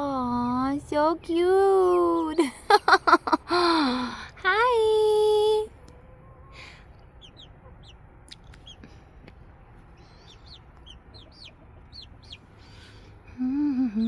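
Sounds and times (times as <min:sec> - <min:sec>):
chicks peeping: 0:01.2 - 0:02.6, 0:05.5 - 0:14.0.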